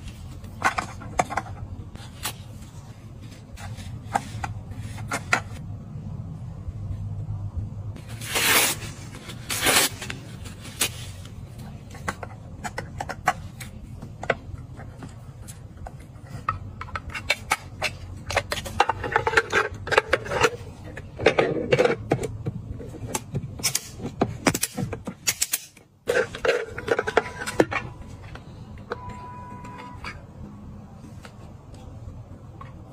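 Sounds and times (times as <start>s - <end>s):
crinkly rustles and scrapes: 0.0s - 5.6s, 8.0s - 12.7s
low steady hum: 0.0s - 32.9s.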